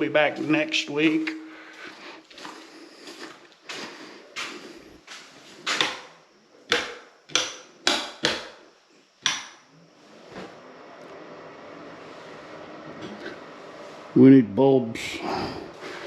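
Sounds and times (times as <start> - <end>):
sharp knocks in echoing room: 5.7 - 6.1, 6.7 - 8.6, 9.2 - 9.6.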